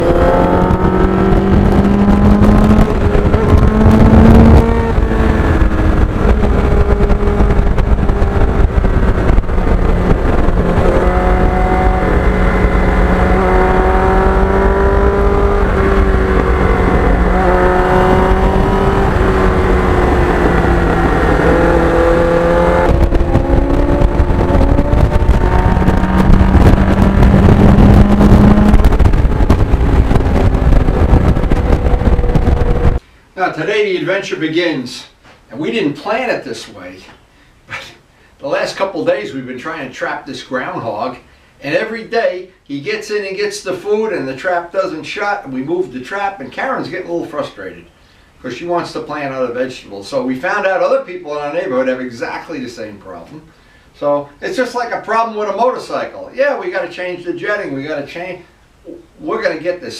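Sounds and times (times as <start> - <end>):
motorcycle engine revving: 0.0 - 33.0.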